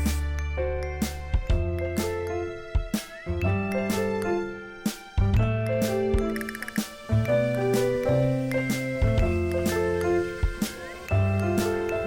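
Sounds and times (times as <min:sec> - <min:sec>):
upbeat music with bell-like notes: 0:00.0 - 0:12.0.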